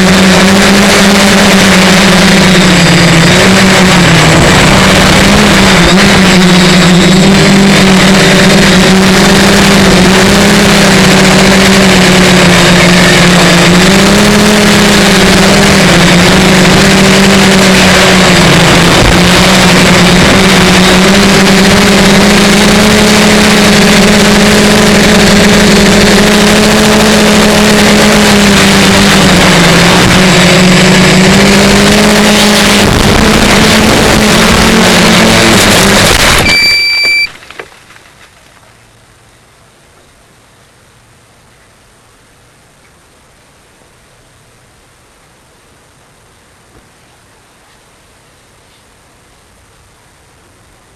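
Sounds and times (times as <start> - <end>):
drone motors humming: 0.0 - 46.7
wind noise: 29.4 - 36.5.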